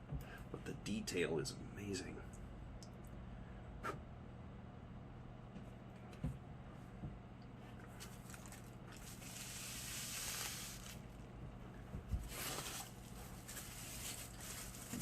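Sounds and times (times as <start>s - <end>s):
low steady hum: 0.0s - 15.0s
plastic bag crinkling: 7.8s - 11.1s, 12.3s - 15.0s.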